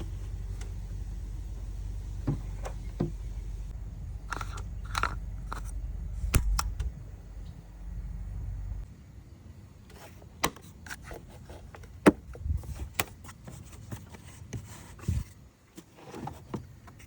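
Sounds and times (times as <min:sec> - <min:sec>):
car engine idling: 0:00.0 - 0:08.8
handling clicks and knocks: 0:04.3 - 0:06.9.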